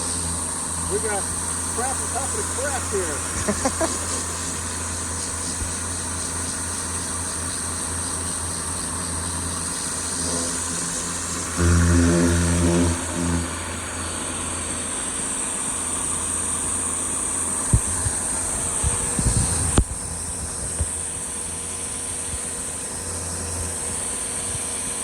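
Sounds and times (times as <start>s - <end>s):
water spray hissing: 0.0s - 13.6s
pressure washer running: 0.0s - 25.0s.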